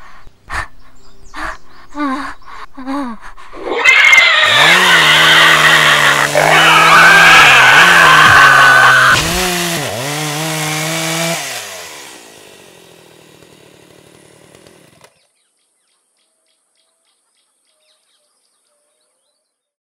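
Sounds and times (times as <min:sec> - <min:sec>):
chainsaw engine revving: 0:03.7 - 0:15.3.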